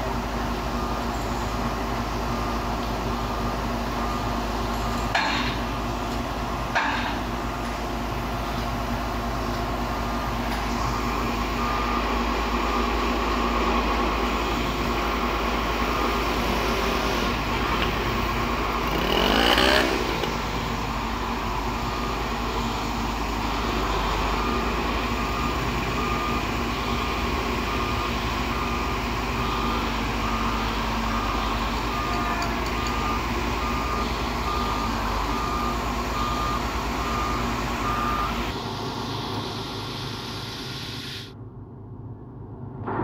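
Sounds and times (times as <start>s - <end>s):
diesel excavator running: 0.0s - 43.0s
reversing alarm beeping: 0.7s - 5.8s, 9.8s - 40.4s.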